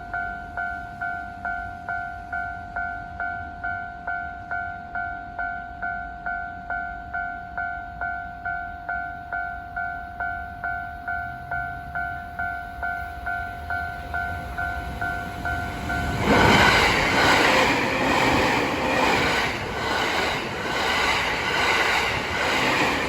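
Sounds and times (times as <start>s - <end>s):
level-crossing warning bell: 0.0s - 23.0s
train passing at speed: 8.0s - 23.0s.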